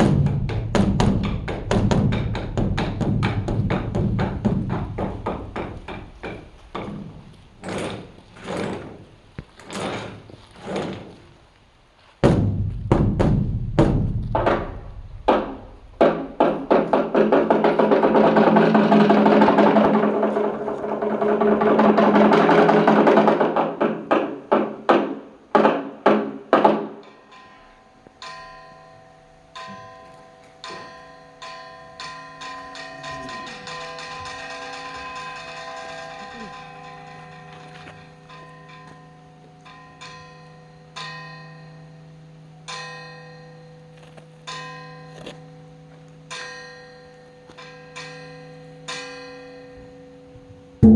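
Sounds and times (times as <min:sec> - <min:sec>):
large temple drum strikes: 0:00.0 - 0:07.2, 0:12.2 - 0:23.3
struck metallic instrument ringing: 0:27.0 - 0:50.9.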